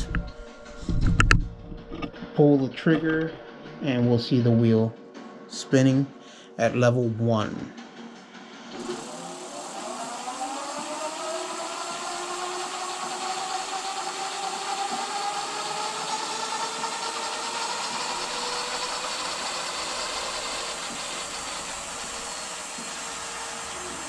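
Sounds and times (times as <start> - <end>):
electric hub motor whine: 8.7 - 24.0.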